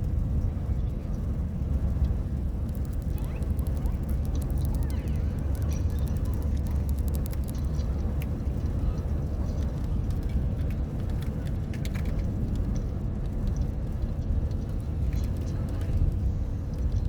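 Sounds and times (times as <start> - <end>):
light ticks and taps: 2.0 - 8.4.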